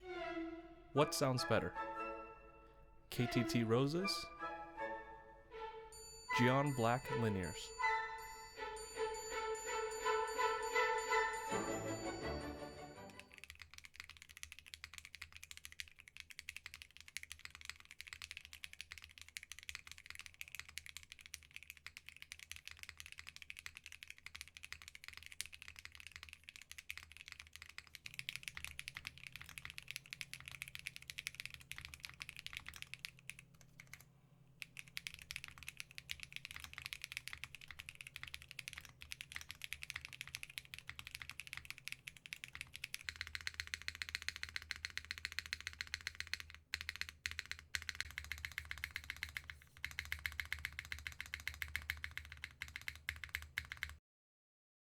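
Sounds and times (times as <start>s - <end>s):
mechanical keyboard typing: 6.4s - 7.7s, 13.0s - 54.0s.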